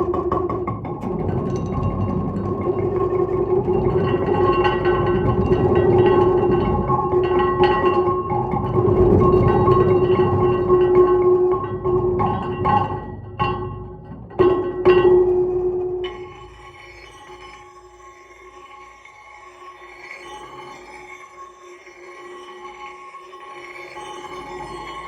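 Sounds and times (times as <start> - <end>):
stone plate strikes: 0.0 - 15.5
stone plates ringing on bass drum: 0.0 - 17.6.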